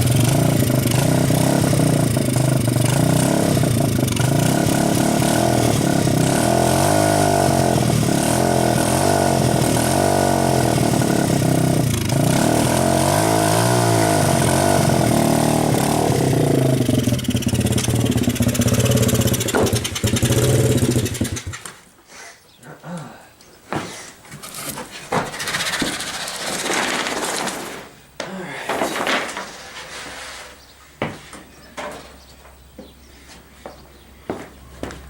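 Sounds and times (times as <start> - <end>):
dirt bike engine running: 0.0 - 21.7.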